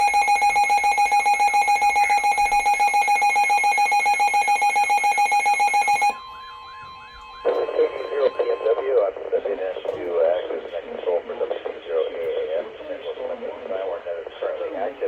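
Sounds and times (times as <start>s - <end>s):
shrill electronic alarm beeps: 0.0s - 9.0s.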